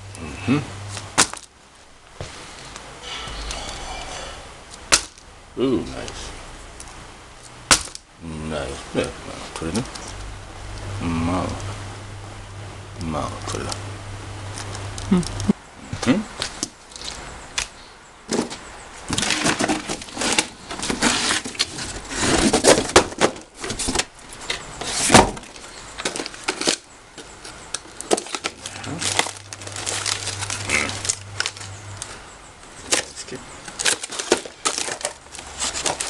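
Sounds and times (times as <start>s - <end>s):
plastic parts clicking and knocking: 22.4s - 32.1s, 32.8s - 36.0s
packaging crinkling: 24.9s - 32.2s, 32.9s - 36.0s.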